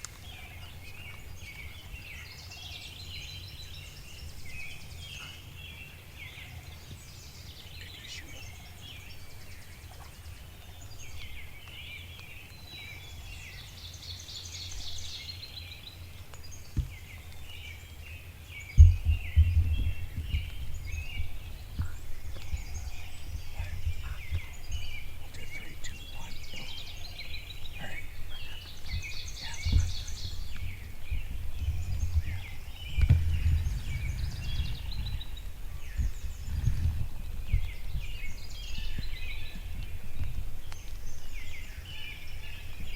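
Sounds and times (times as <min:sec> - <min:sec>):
songbirds chirping and trilling: 0:00.0 - 0:42.9
low rumble: 0:18.7 - 0:42.9.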